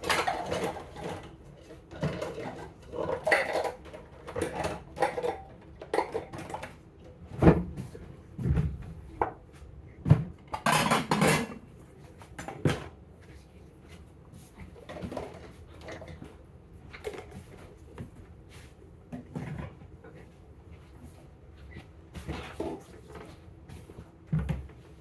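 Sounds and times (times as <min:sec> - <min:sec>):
dishes and cookware clattering: 0:10.5 - 0:11.6.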